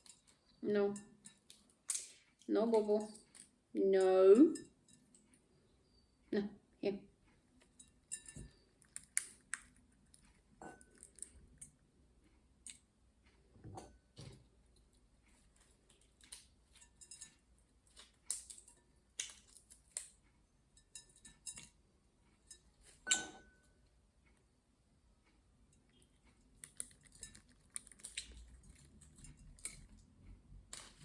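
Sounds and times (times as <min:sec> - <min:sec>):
walnut shells clicking and tapping: 0:01.2 - 0:03.6, 0:08.2 - 0:10.2, 0:17.8 - 0:20.2.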